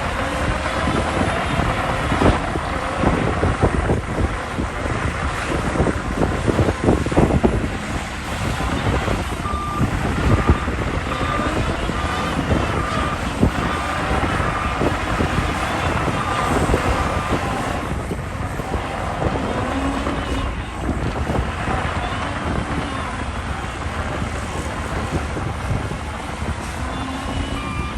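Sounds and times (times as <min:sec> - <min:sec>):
heavy diesel machinery running: 0:00.0 - 0:27.9
wind noise on microphone: 0:00.0 - 0:27.9
reversing alarm beeping: 0:06.5 - 0:23.9, 0:26.7 - 0:27.9.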